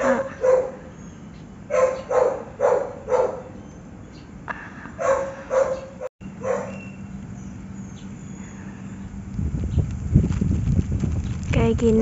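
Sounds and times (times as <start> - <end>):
dog barking: 0.0 - 0.9, 1.7 - 3.6, 5.0 - 6.8.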